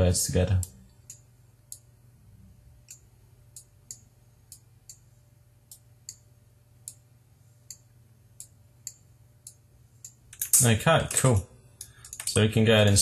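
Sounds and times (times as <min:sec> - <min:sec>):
steady low hum: 0:00.0 - 0:13.0
computer mouse clicking: 0:11.8 - 0:13.0.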